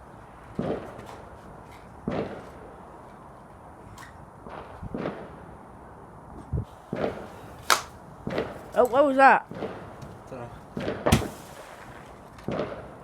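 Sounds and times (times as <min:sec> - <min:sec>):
fireworks bangs and pops: 0:00.5 - 0:02.8, 0:04.4 - 0:05.5, 0:06.8 - 0:08.9, 0:09.5 - 0:13.0.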